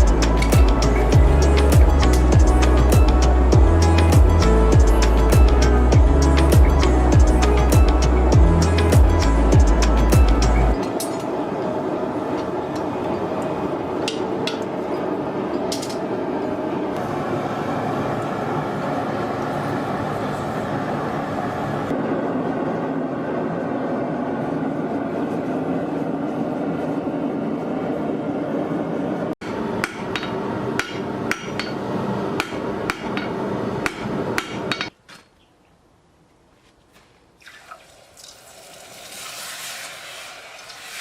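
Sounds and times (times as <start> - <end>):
steady drone: 0.0 - 27.0
hammer striking steel on anvil: 29.4 - 31.8, 32.4 - 35.0.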